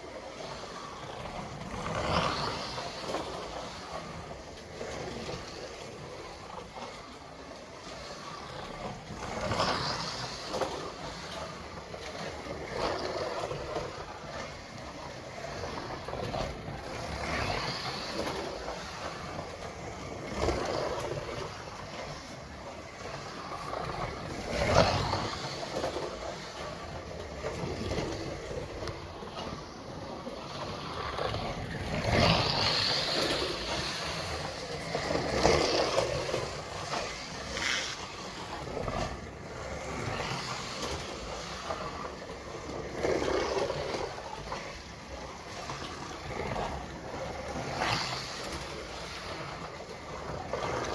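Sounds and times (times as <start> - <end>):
toy car running along track: 0.0 - 50.9
slot car motor whining: 30.8 - 42.1.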